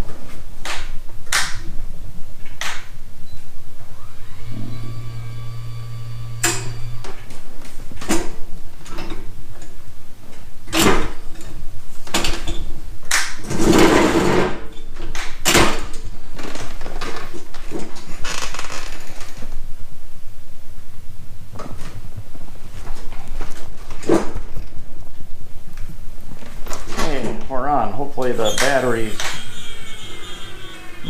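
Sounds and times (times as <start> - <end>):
small electric motor humming: 3.9 - 7.2, 29.1 - 31.0.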